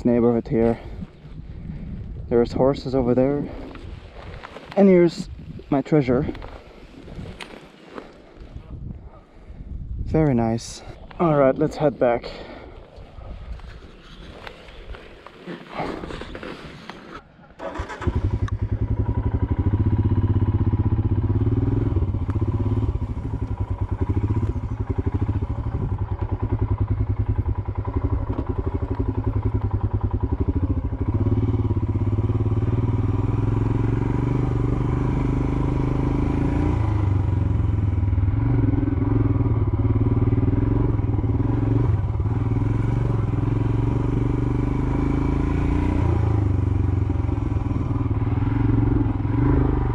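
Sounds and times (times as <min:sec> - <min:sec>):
motorcycle engine running: 0:17.6 - 0:49.9.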